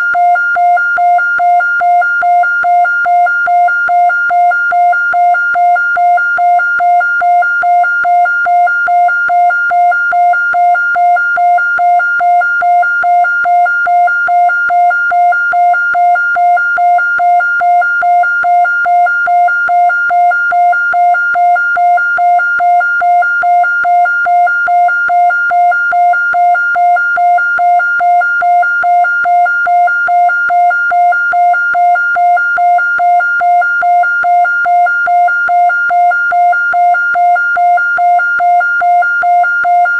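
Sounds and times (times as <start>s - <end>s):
pulsing police siren tone: 0.0s - 39.9s.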